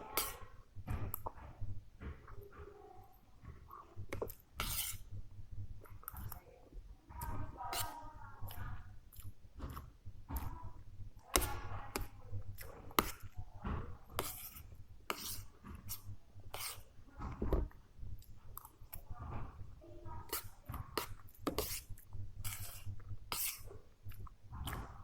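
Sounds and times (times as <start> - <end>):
person chewing and smacking: 8.5 - 9.9, 21.1 - 24.9.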